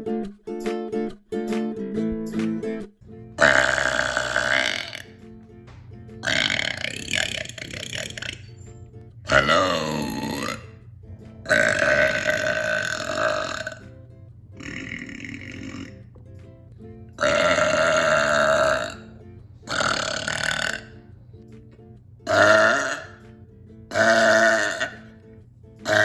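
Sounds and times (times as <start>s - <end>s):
music with steady beat: 0.0s - 24.3s
woman burping loudly: 3.4s - 5.2s, 6.2s - 8.5s, 9.3s - 10.7s, 11.5s - 13.8s, 14.6s - 16.0s, 17.2s - 19.1s, 19.7s - 21.0s, 22.3s - 23.2s, 23.9s - 25.1s.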